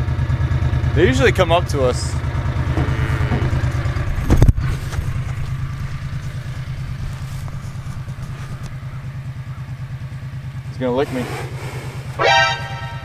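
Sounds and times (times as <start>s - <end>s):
utility vehicle engine running: 0.0s - 13.0s.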